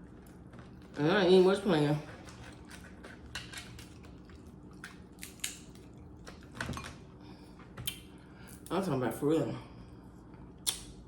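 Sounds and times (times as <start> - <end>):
chewing food: 0.0 - 7.1.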